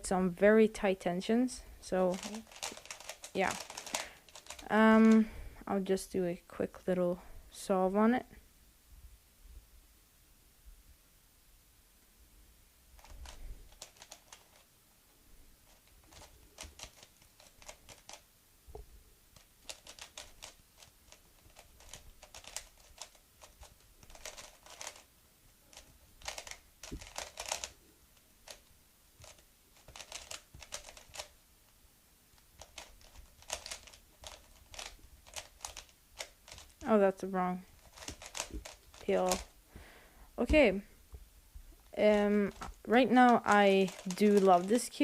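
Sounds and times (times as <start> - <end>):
puzzle cube clicking: 2.1 - 5.2, 13.0 - 14.6, 15.7 - 18.2, 19.4 - 25.1, 25.7 - 27.7, 28.4 - 31.4, 32.4 - 37.2, 37.8 - 39.5, 41.9 - 44.9.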